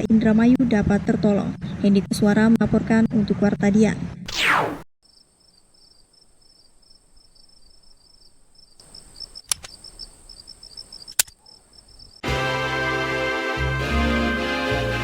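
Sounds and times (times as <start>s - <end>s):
insects chirping: 5.0s - 12.2s
high-pitched insect trill: 5.1s - 12.2s
sharp clicks: 8.9s - 10.1s, 10.8s - 12.0s.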